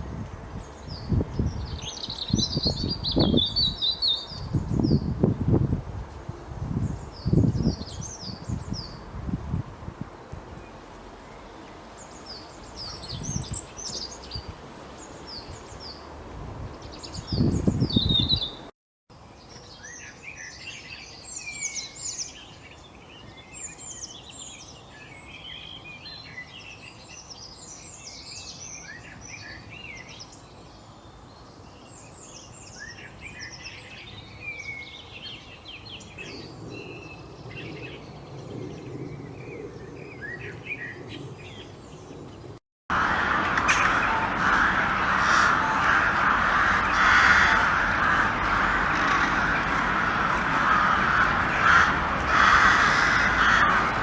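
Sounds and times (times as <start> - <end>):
small birds chirping: 10.6 - 16.1
low rumbling noise: 42.4 - 54.0.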